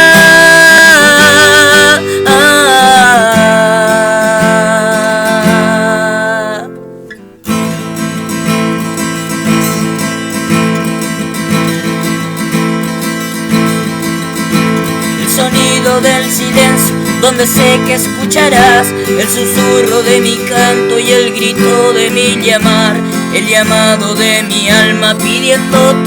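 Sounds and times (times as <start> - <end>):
person singing: 0.0 - 6.8, 15.2 - 26.0
acoustic guitar strumming: 0.0 - 26.0.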